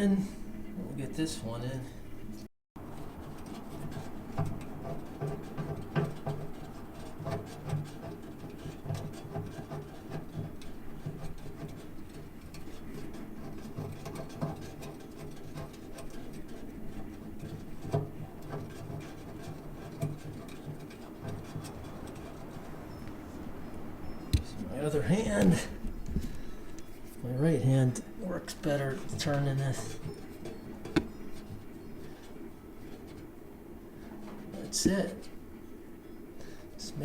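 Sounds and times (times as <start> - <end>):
rubbing and scraping: 2.8 - 37.0
handling knocks: 28.8 - 33.3.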